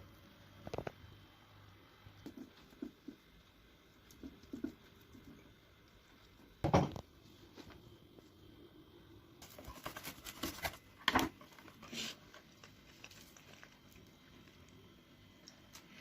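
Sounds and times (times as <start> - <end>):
knock on kitchen surface: 6.6 - 7.0.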